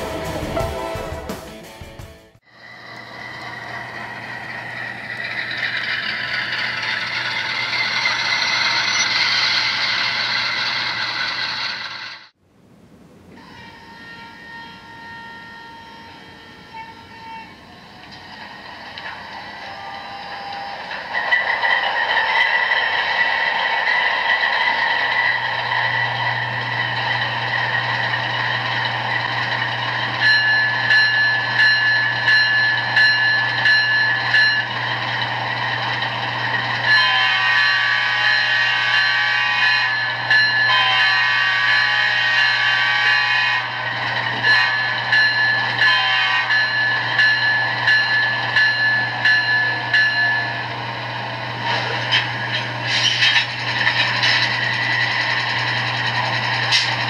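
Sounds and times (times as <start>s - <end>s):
multi-tone horn blasts: 13.4s - 17.9s, 36.9s - 45.2s, 45.8s - 46.8s
bell clanging: 30.0s - 35.2s, 39.9s - 40.8s, 44.3s - 50.9s.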